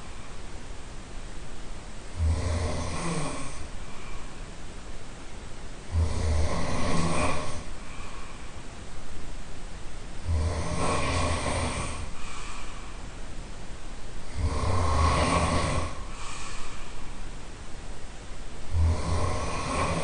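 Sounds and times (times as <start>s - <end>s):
quiet breathing: 0.0s - 5.2s, 5.8s - 9.4s, 10.2s - 17.8s, 18.6s - 20.0s
person snoring loudly: 2.1s - 3.7s, 5.9s - 7.7s, 10.2s - 12.2s, 14.2s - 16.3s, 18.7s - 20.0s.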